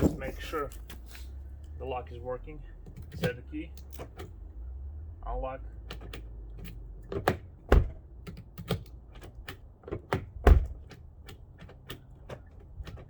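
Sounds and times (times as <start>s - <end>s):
door lock thunks: 6.0s - 11.0s.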